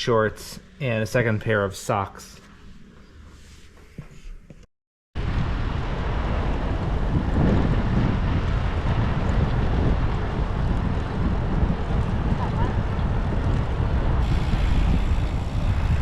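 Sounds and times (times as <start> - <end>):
wind buffeting microphone: 5.2 - 16.0.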